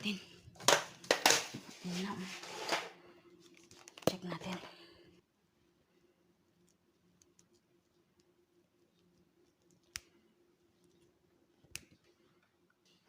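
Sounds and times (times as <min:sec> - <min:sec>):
faint steady hum: 0:02.7 - 0:13.0.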